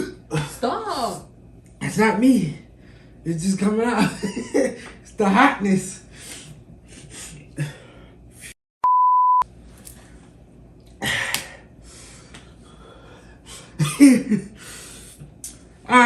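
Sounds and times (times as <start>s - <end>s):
censor bleep tone: 8.8s - 9.4s.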